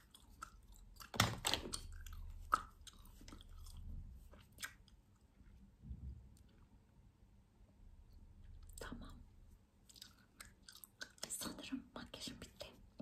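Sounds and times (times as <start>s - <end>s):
gum chewing mouth smacks: 0.0s - 5.3s, 9.8s - 11.6s.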